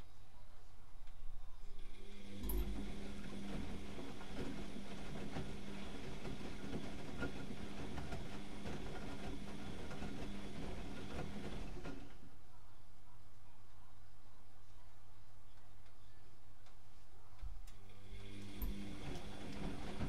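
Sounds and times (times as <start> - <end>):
washing machine motor hum: 1.7 - 12.3, 17.8 - 20.0.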